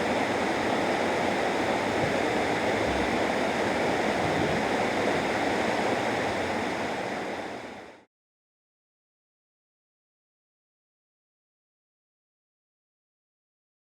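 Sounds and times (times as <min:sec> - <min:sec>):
waterfall rushing: 0:00.0 - 0:07.9.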